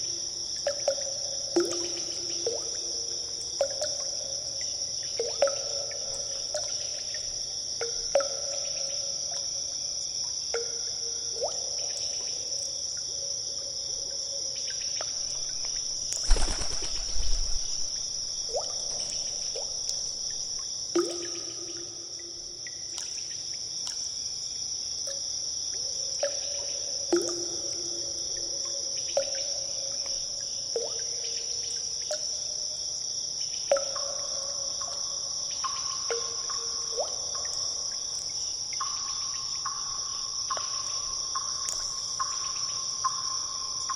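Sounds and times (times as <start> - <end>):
water drops plinking into pool: 0.0 - 13.1, 14.6 - 24.2, 25.0 - 32.5, 33.6 - 43.9
heavy splash with low thump: 15.4 - 20.2.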